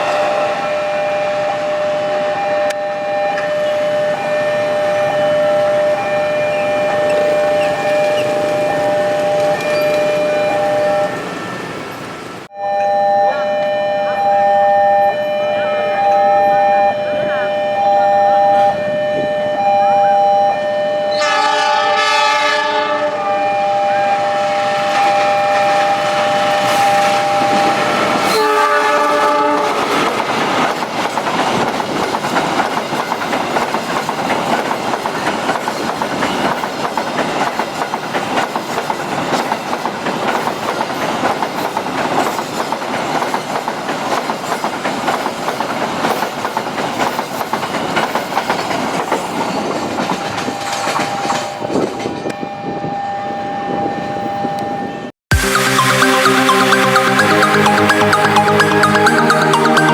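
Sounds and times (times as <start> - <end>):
train horn: 0.0 - 11.3, 15.1 - 30.2, 50.5 - 55.1
level crossing warning alarm: 0.0 - 35.6, 52.3 - 59.9
train wheels clattering over rails: 29.2 - 52.3.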